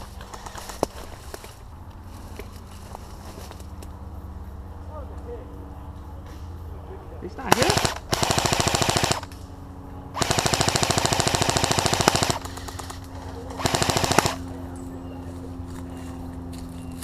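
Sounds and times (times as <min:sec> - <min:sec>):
airsoft rifle bursts: 0:07.5 - 0:09.3, 0:10.2 - 0:14.5.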